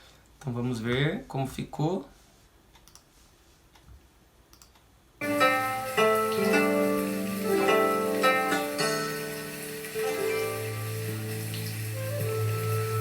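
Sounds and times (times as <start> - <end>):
faint clicks: 2.8 - 3.1, 4.5 - 4.9
instrumental music with keyboard: 5.2 - 13.0.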